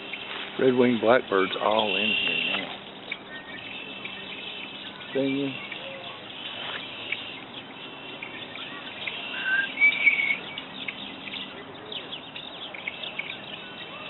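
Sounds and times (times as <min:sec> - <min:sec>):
blackbirds singing and calling: 0:00.0 - 0:14.0.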